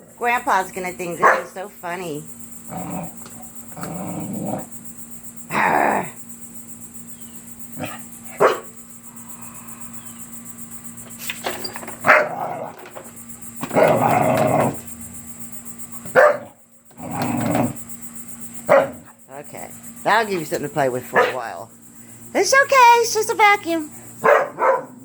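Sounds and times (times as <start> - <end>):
dog barking: 1.2 - 1.6, 7.8 - 8.8, 12.0 - 12.5, 16.1 - 16.6, 18.7 - 19.2, 21.1 - 21.5, 24.2 - 25.0.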